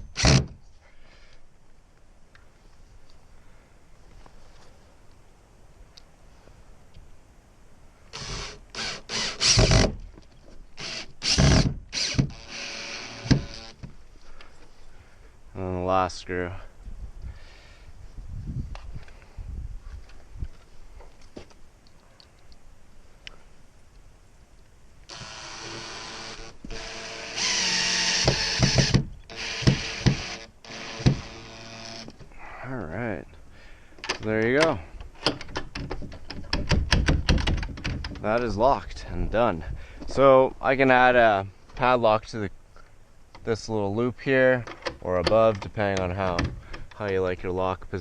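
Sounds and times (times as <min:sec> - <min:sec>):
drill driving screws: 0:00.0 - 0:00.5, 0:08.1 - 0:10.0, 0:10.8 - 0:13.9, 0:25.1 - 0:32.1.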